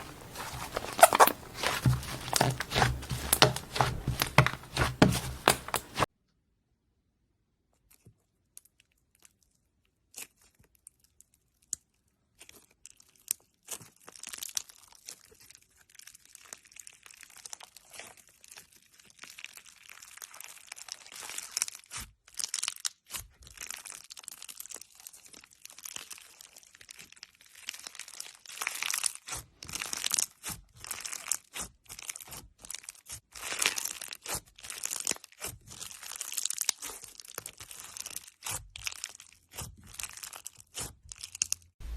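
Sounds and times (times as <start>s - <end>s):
crunchy slime crackling: 0.0s - 6.1s, 33.4s - 41.9s.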